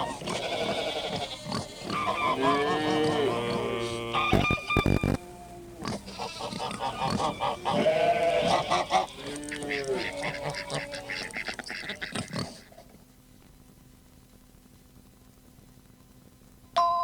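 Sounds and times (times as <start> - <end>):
farm animals calling: 0.0 - 12.7
faint hum: 0.0 - 16.8.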